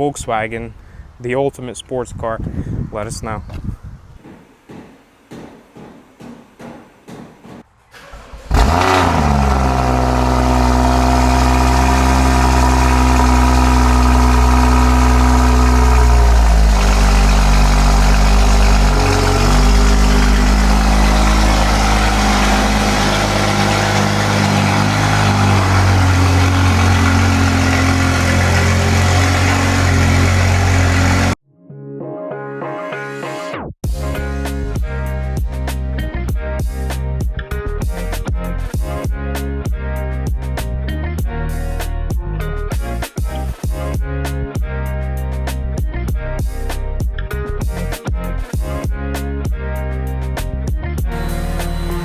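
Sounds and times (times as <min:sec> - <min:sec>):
car engine starting and idling: 0:07.9 - 0:31.4, 0:51.1 - 0:52.0.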